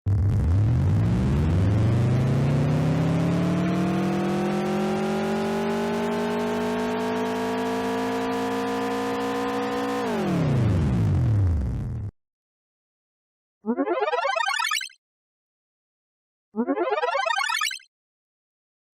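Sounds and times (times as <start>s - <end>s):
pitched hum sound effect: 0.0s - 7.3s.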